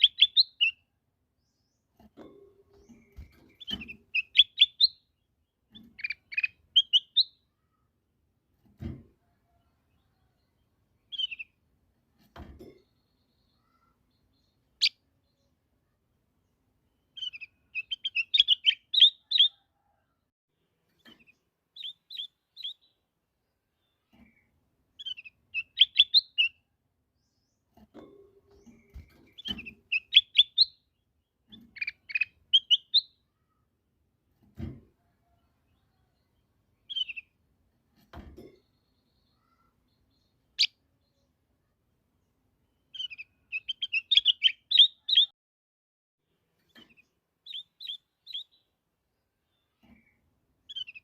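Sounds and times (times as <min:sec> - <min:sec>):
bulbul chirping: 0:00.0 - 0:00.8, 0:03.2 - 0:05.0, 0:05.8 - 0:07.4, 0:17.2 - 0:19.6, 0:21.8 - 0:23.0, 0:25.0 - 0:26.6, 0:29.3 - 0:30.8, 0:31.6 - 0:33.2, 0:42.9 - 0:45.3, 0:46.9 - 0:48.7, 0:50.7 - 0:51.0
bird chirping: 0:00.0 - 0:08.0, 0:09.5 - 0:11.6, 0:12.6 - 0:19.8, 0:20.9 - 0:33.8, 0:35.3 - 0:37.4, 0:38.4 - 0:45.3, 0:46.3 - 0:51.0.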